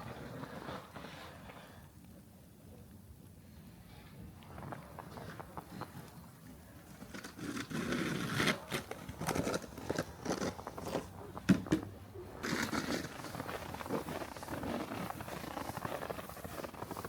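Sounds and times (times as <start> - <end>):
footsteps crunching in snow: 12.4 - 17.0.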